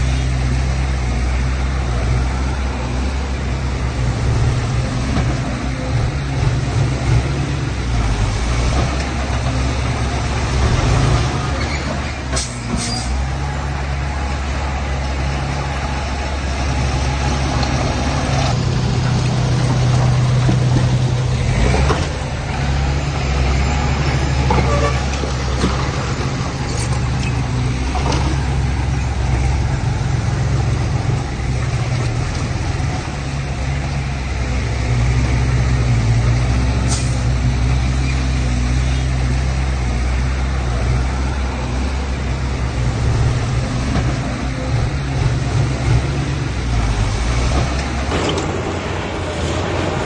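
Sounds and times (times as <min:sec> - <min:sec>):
diesel earthmoving machinery droning: 0:00.0 - 0:50.0.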